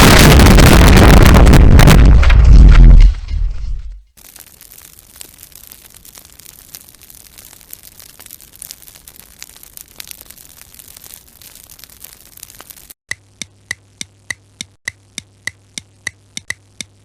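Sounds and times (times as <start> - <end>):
static crackling with clicks: 4.1 - 17.0
sharp ticks: 4.8 - 17.0.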